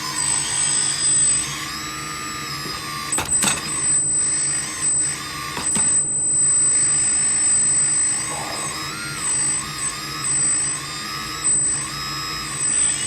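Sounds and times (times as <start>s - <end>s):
electric motors and pump whining: 0.0s - 13.0s.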